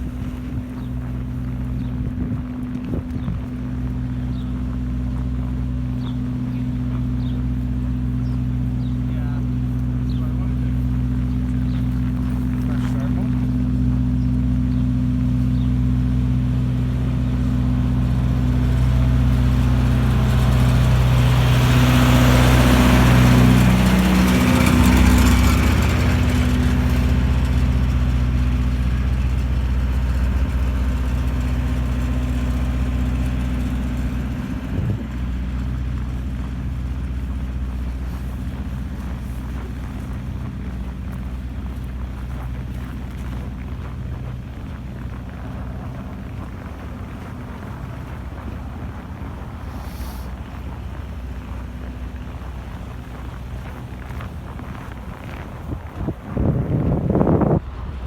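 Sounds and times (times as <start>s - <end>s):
vehicle engine humming: 0.0s - 58.0s
vehicle passing: 0.0s - 58.0s.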